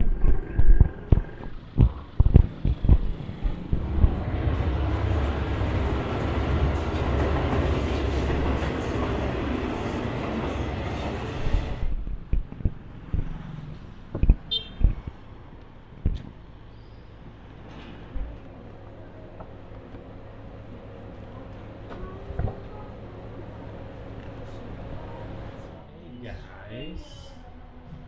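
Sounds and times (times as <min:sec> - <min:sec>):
knocks and thumps: 0:00.0 - 0:04.6, 0:14.1 - 0:15.2, 0:16.0 - 0:16.4
vehicle rumble: 0:00.0 - 0:28.0.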